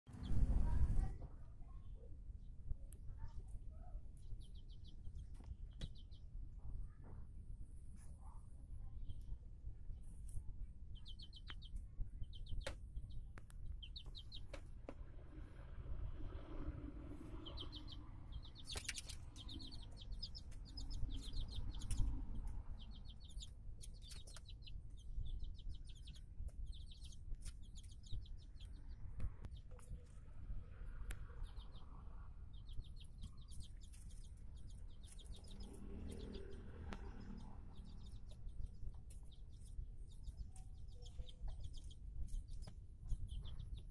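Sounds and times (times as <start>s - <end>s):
chicks peeping: 3.2s - 7.2s, 8.9s - 43.9s.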